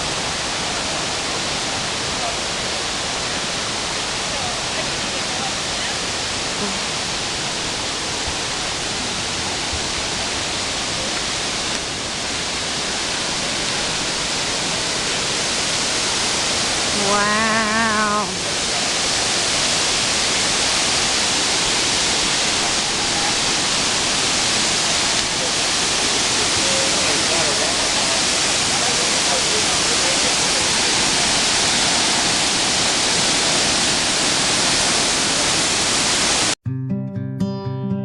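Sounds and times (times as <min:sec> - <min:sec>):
waterfall rushing: 0:00.0 - 0:36.6
person's voice: 0:06.6 - 0:06.9, 0:17.0 - 0:18.5.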